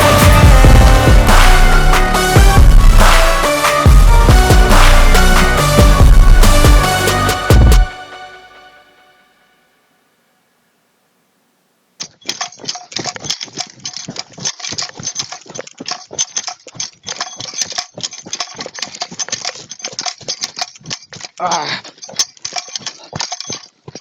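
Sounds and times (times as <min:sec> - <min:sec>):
footsteps crunching on dirt and rocks: 0:12.0 - 0:24.0.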